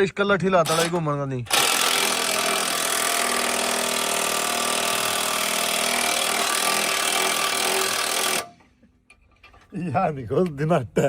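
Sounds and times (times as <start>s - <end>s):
power tool running: 0.7s - 8.6s.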